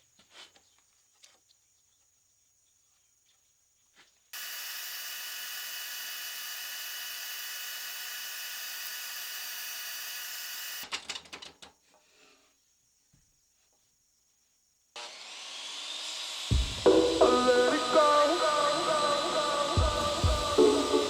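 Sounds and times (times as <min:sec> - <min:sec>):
power tool whining: 0:04.4 - 0:10.8, 0:15.0 - 0:21.0.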